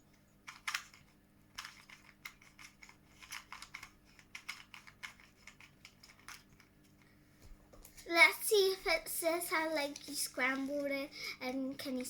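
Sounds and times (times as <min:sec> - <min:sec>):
speed cube plastic clicks: 0:00.4 - 0:06.7.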